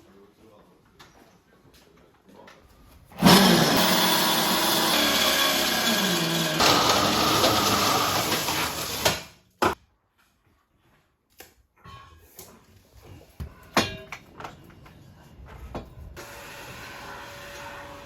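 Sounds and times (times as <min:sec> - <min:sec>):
loud motor running: 0:03.2 - 0:09.3.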